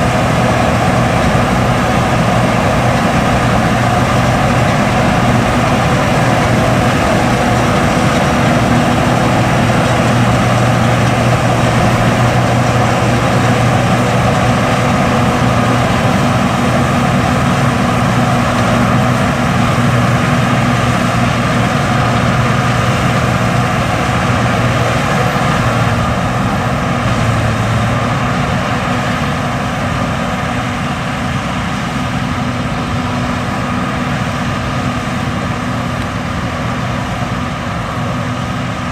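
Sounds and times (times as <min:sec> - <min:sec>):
combine harvester engine drone: 0:00.0 - 0:38.9.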